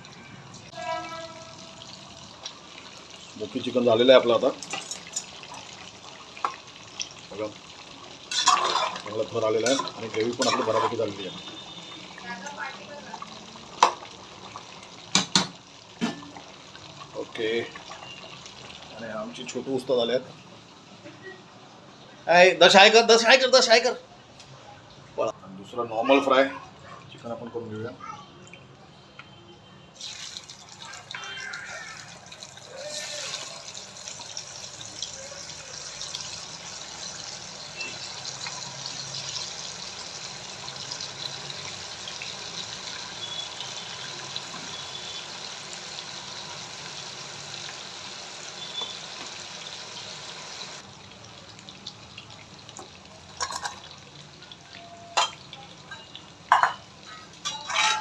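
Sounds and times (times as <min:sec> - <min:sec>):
chicken sizzling in hot oil: 0:00.0 - 0:21.1, 0:30.0 - 0:58.0
utensils knocking on pan: 0:15.1 - 0:16.2.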